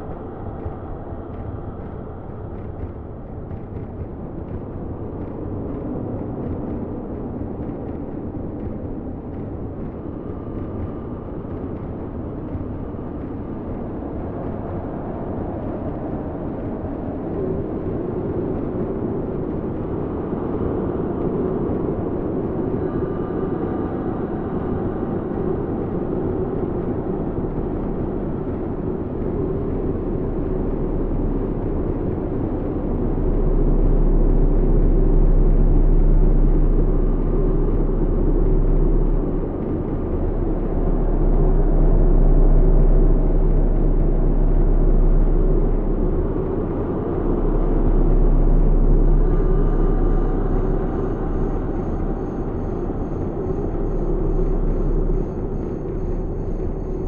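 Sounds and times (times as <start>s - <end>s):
low rumbling tunnel ambience: 0.0s - 57.0s
deep hum: 22.5s - 57.0s.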